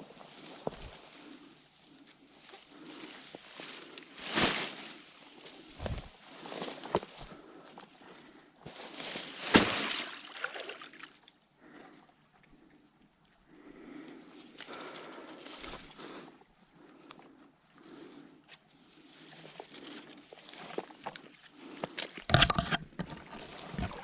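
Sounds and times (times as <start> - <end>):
scuffing and rustling: 2.5 - 7.4.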